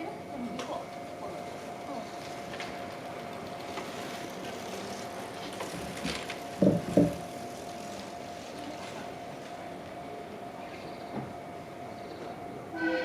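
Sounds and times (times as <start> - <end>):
train horn blasts: 12.7 - 13.0.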